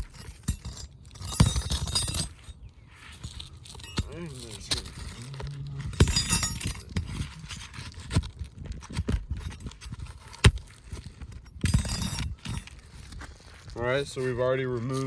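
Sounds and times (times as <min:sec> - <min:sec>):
scraping crackling: 0:00.0 - 0:15.0.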